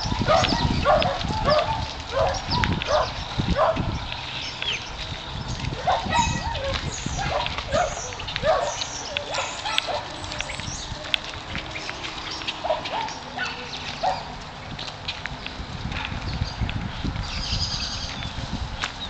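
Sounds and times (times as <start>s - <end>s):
dogs yelping and whining: 0.0s - 3.8s, 5.8s - 11.3s, 12.5s - 14.3s
scuffling and clicking: 0.0s - 16.2s.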